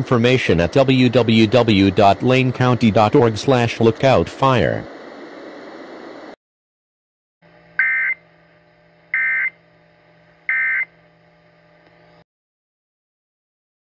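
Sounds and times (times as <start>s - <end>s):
faint steady hum: 0.0s - 6.4s, 7.5s - 12.2s.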